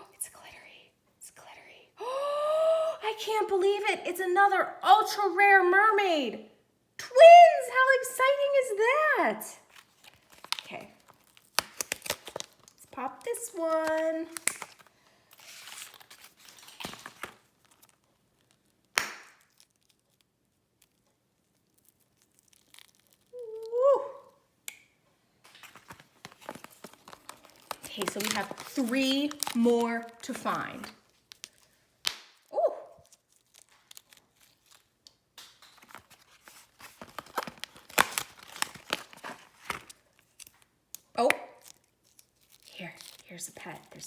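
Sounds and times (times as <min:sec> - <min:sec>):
plastic crinkling and clicks: 0:09.8 - 0:23.4, 0:24.7 - 0:44.0
slime toy crackling and clicking: 0:10.4 - 0:14.8, 0:26.6 - 0:35.9.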